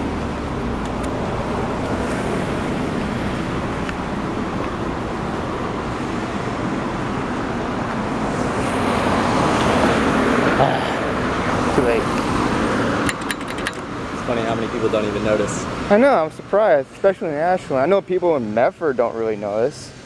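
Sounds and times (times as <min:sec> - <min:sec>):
vehicle passing close: 0:00.0 - 0:16.0
road traffic passing: 0:00.0 - 0:20.0.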